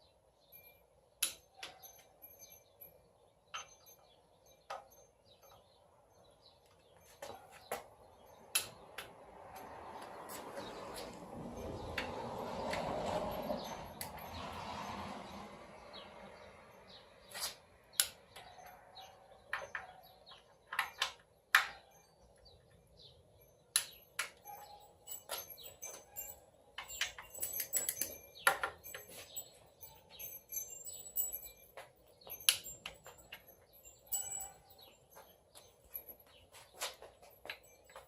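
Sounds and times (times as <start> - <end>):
hand tools clicking on metal: 25.2 - 29.4.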